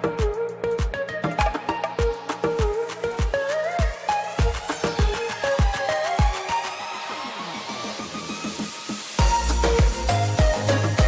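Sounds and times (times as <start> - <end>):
deep kick drum: 0.2 - 6.4, 9.2 - 10.7.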